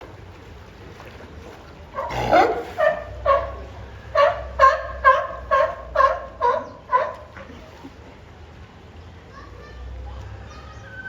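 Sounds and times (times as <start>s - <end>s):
sea lion barking: 2.0s - 7.4s.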